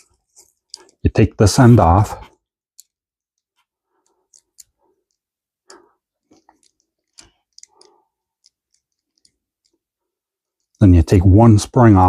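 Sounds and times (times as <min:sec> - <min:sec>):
faint metallic clicks: 0:02.7 - 0:09.8.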